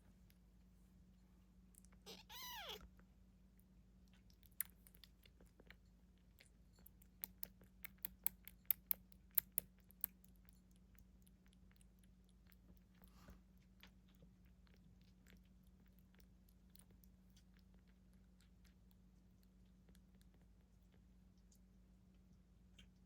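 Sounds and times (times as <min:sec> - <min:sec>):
cat meowing: 0:02.0 - 0:02.8
cat chewing crunchy food: 0:03.0 - 0:23.0.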